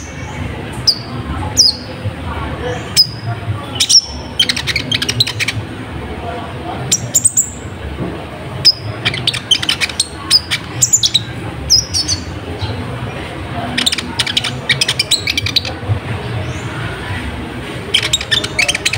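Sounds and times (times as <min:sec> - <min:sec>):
sunbird twittering song: 0:02.8 - 0:05.6, 0:08.6 - 0:12.8, 0:13.7 - 0:15.8, 0:17.8 - 0:18.9.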